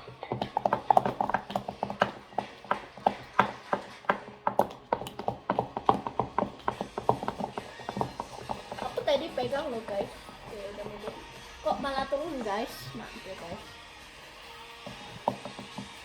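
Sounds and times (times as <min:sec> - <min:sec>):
slime clicking and tapping: 0:00.0 - 0:09.6.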